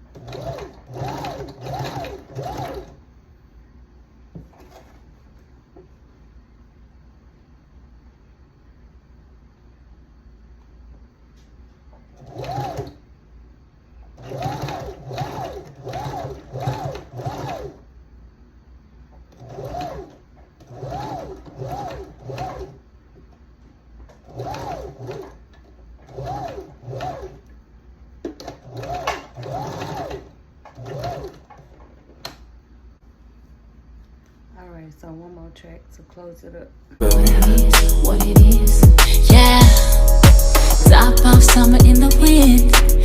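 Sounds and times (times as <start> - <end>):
sewing machine stitching: 0.0 - 3.0, 12.0 - 13.0, 14.1 - 17.8, 19.2 - 22.8, 24.1 - 27.5, 28.2 - 32.4.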